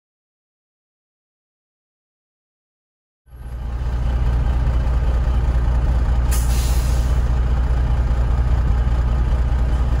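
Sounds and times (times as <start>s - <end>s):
diesel engine running: 3.3s - 10.0s.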